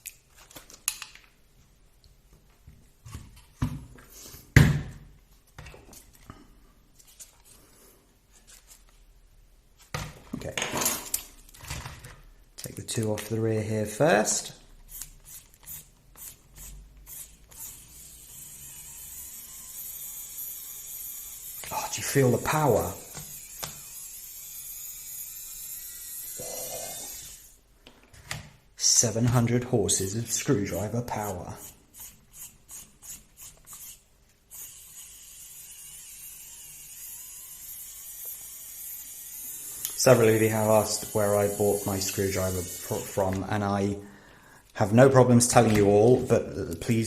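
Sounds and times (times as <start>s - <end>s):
electric screwdriver motor running: 14.9s - 27.6s, 32.0s - 43.3s.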